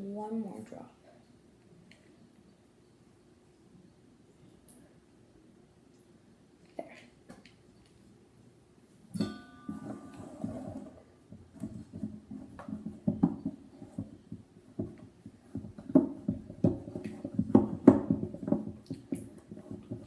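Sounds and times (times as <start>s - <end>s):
stirring in a bowl: 9.2s - 20.0s.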